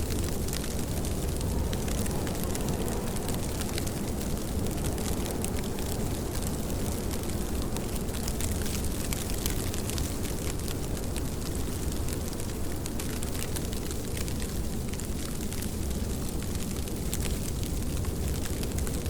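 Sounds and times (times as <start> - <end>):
deep low rumble: 0.0 - 8.6
rain rushing: 0.0 - 19.0
raindrop ticks: 0.0 - 19.0.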